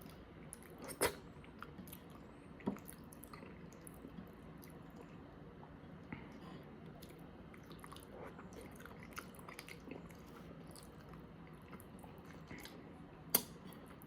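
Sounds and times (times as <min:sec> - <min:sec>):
person chewing food: 0:00.0 - 0:05.4, 0:06.0 - 0:14.0.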